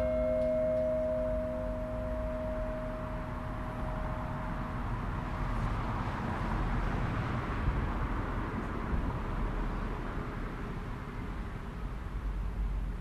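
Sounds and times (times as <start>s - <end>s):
church bell hum: 0.0s - 6.6s
outdoor noise: 0.0s - 13.0s
vehicle passing rumble: 0.0s - 13.0s.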